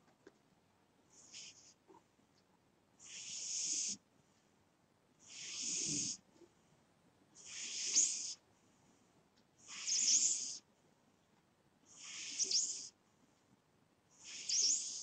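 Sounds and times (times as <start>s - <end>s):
cat snoring: 1.2s - 1.8s, 3.0s - 4.0s, 5.2s - 6.2s, 7.4s - 8.4s, 9.6s - 10.6s, 11.9s - 13.0s, 14.1s - 15.0s.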